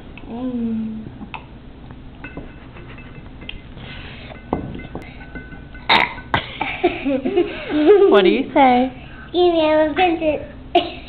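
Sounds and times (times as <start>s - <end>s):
faint clinks and knocks: 2.2s - 6.5s
child burping: 5.9s - 6.6s.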